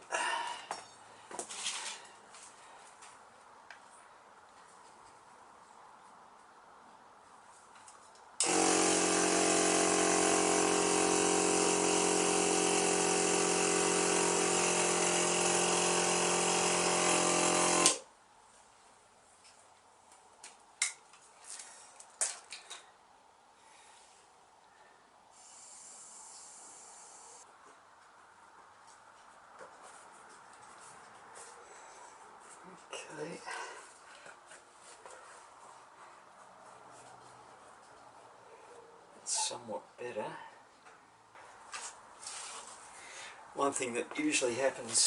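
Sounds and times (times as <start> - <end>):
electric air compressor running: 8.4 - 18.0, 25.4 - 27.4.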